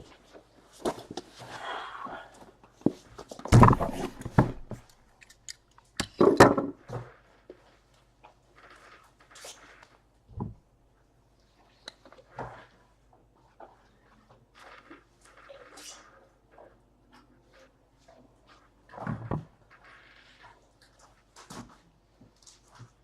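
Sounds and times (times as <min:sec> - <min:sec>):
clicks and knocks of objects: 0:02.8 - 0:07.1.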